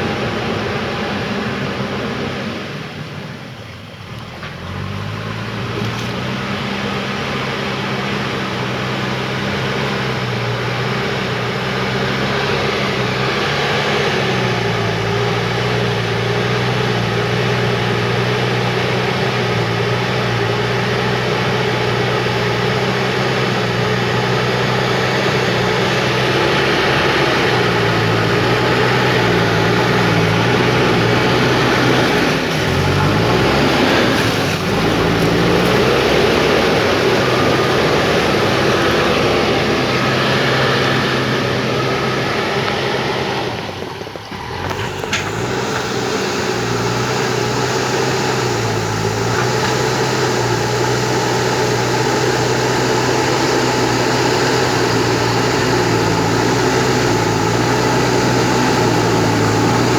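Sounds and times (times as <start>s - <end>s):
diesel engine working: 0.0s - 59.9s.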